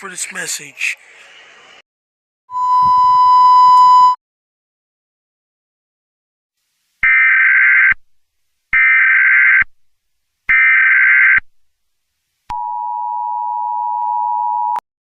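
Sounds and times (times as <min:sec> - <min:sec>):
two-tone attention signal: 0:02.5 - 0:04.2.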